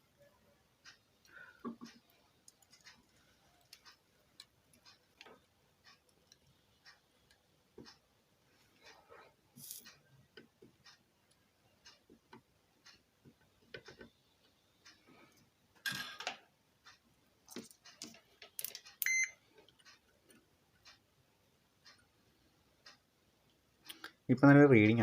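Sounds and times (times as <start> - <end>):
tools clicking and tapping: 0.8 - 8.0, 9.6 - 14.6, 15.8 - 21.0
short electronic beep: 19.0 - 19.3.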